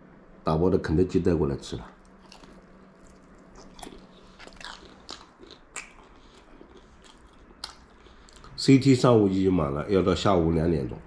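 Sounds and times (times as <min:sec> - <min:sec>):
faint steady hum: 0:00.0 - 0:11.0
person chewing crunchy food: 0:02.0 - 0:08.6.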